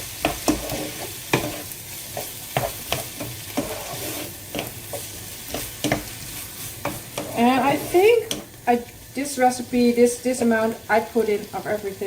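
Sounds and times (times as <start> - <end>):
food sizzling in a frying pan: 0.0 - 12.0
spoon knocking and scraping pan: 0.1 - 8.6.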